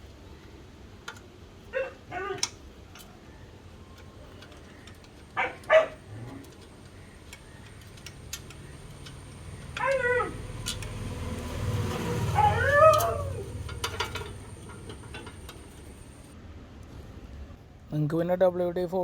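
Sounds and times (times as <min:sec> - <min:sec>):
dog barking: 0:01.7 - 0:02.4, 0:05.4 - 0:06.4, 0:09.8 - 0:10.4, 0:12.1 - 0:13.5.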